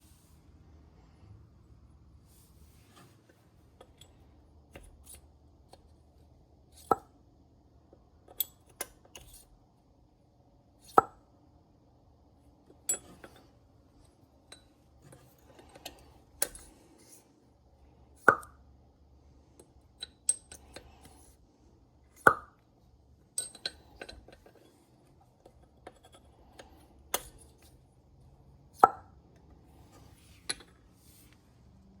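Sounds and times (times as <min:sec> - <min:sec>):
light metal clicks and clinks: 0:23.3 - 0:24.6.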